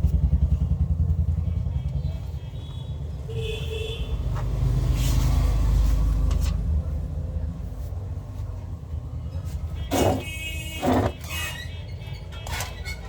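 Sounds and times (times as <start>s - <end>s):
low steady rumble: 0.0s - 4.2s.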